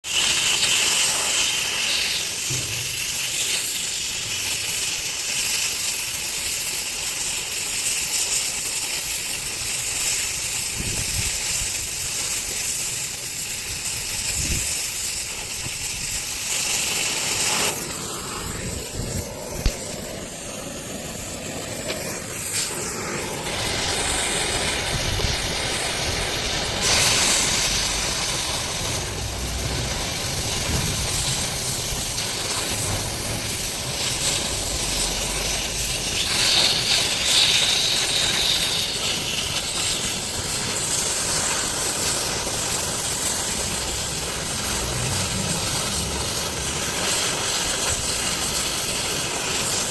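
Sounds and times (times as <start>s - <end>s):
welding arc hissing: 0.0s - 49.9s.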